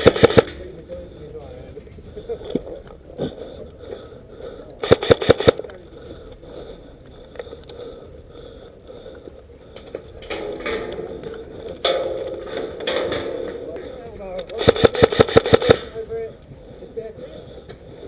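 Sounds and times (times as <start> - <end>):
airsoft rifle shots: 0.0 - 0.6, 4.8 - 5.6, 14.5 - 15.9.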